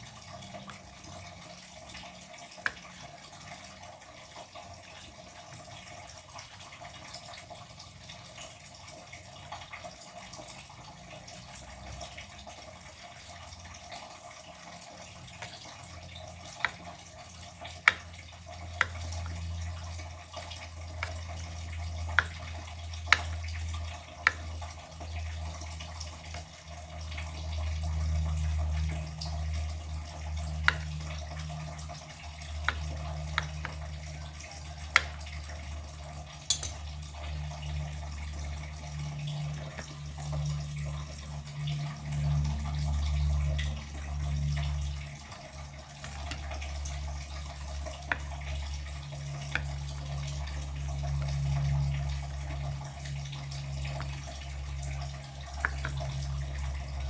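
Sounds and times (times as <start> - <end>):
water running in a sink: 0.0 - 57.0
dishes clinking: 36.5 - 36.9.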